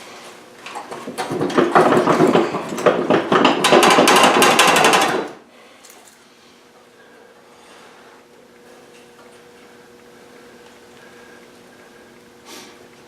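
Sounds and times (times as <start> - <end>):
rapid metallic clattering: 0.8 - 5.4.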